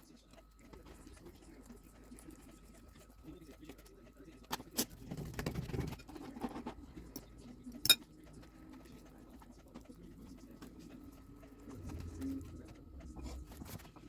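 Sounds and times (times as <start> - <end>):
utensils and dishes tapping: 4.5 - 8.5.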